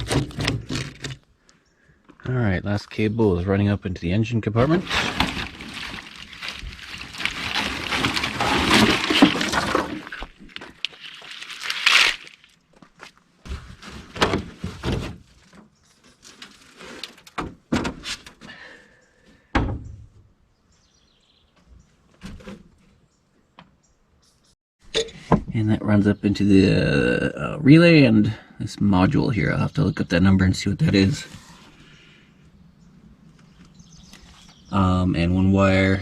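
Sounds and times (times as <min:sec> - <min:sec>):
wiring harness crackling rustle: 0:04.6 - 0:14.0.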